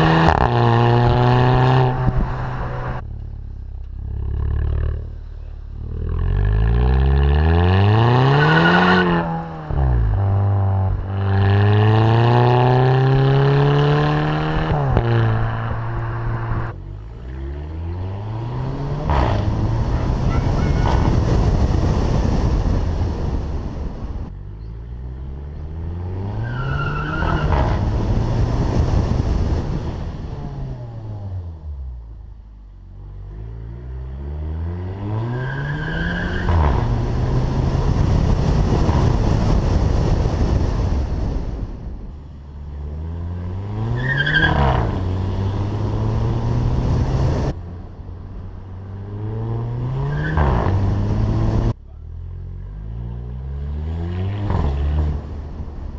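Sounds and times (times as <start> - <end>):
crackling exhaust: 0.0 - 7.8.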